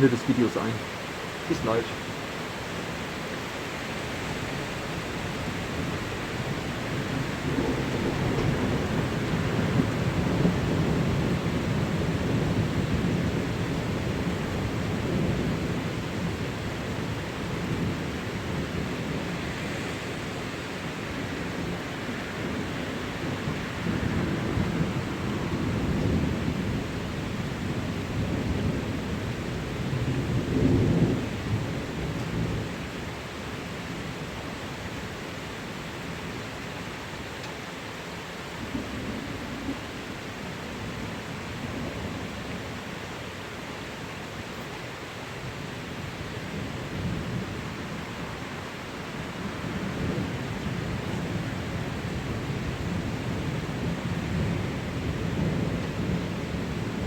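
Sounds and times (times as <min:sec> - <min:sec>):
steady rain: 0:00.0 - 0:57.0
low rolling thunder: 0:03.9 - 0:37.0, 0:38.3 - 0:42.9, 0:45.4 - 0:57.0.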